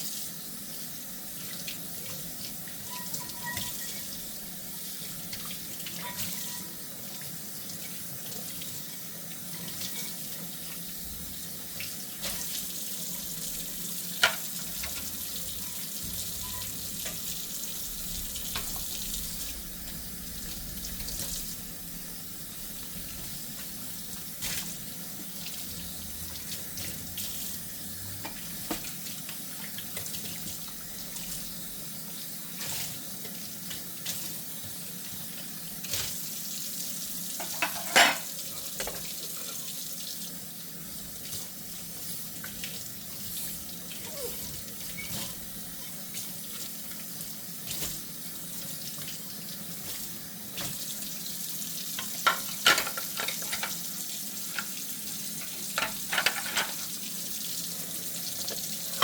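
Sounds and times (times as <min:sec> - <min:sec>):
tap water running into sink: 0:00.0 - 0:59.0
dishes clinking: 0:02.9 - 0:04.1, 0:06.0 - 0:06.7, 0:09.5 - 0:10.2, 0:37.4 - 0:38.9, 0:52.0 - 0:53.8, 0:55.7 - 0:56.9.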